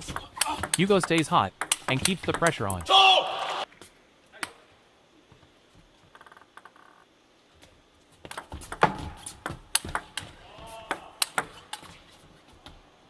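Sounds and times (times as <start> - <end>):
table tennis ball clicking: 0.4 - 2.9.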